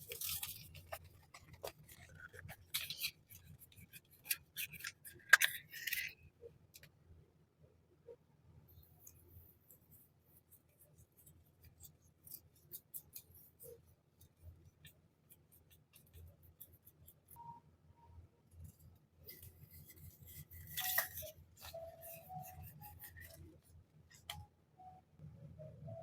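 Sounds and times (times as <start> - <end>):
packaging clicks and crinkles: 0.0 - 6.2, 19.3 - 23.5.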